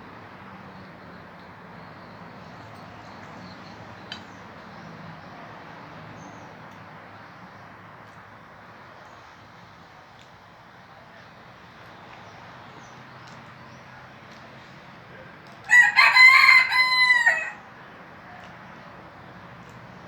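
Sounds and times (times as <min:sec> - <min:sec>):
rooster crowing: 0:15.7 - 0:17.7.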